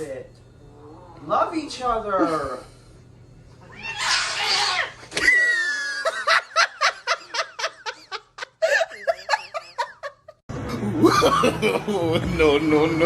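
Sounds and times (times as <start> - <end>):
person laughing hard: 5.3 - 12.2.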